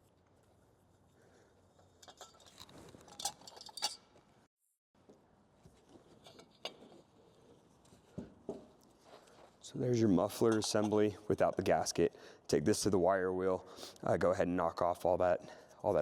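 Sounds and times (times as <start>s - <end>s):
metal parts and tools clinking: 1.7s - 4.3s, 10.4s - 11.1s.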